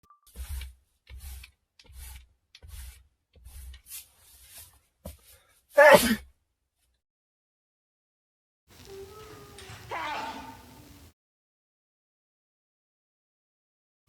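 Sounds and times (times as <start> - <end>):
loud voiced sneeze: 5.8 - 6.2
short breathy sneezes: 5.8 - 6.2.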